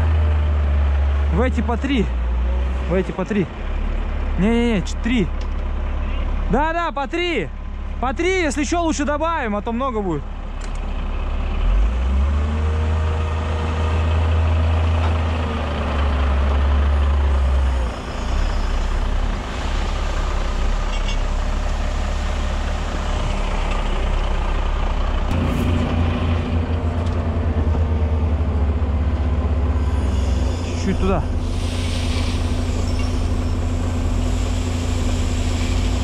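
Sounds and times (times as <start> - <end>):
heavy diesel engine running: 0.0 - 36.0
pulsing low throb: 25.1 - 31.6.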